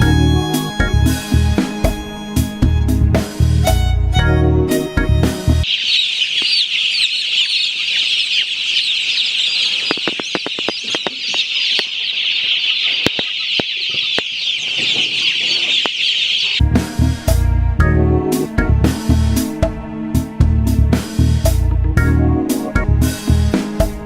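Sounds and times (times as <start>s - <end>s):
music with a beat: 0.0s - 5.6s, 16.6s - 24.0s
chicks peeping: 0.0s - 17.4s.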